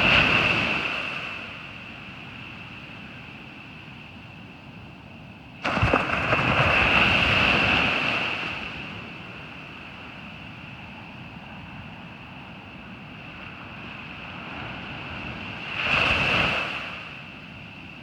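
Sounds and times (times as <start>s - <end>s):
wave breaking: 5.6s - 8.6s
sea washing on a beach: 5.6s - 17.9s.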